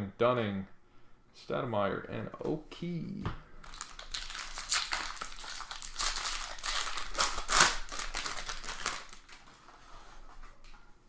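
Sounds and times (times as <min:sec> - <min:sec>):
foil wrappers crinkling: 0:03.6 - 0:09.8.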